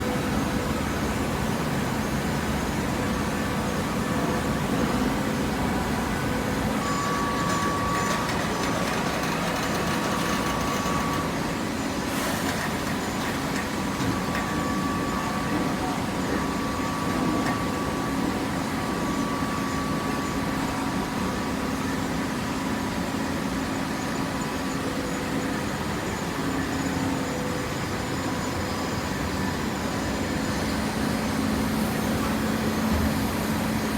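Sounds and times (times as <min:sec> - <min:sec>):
baler machine hum: 0:00.0 - 0:21.1
faint machine whine: 0:00.0 - 0:33.9.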